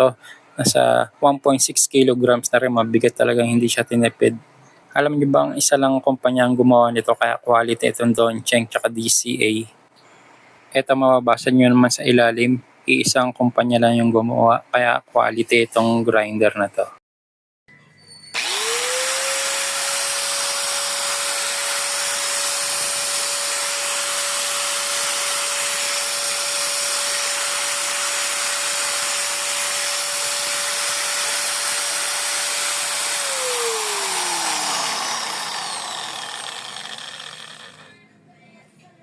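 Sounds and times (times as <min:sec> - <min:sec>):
angle grinder motor whining: 0:18.3 - 0:38.0.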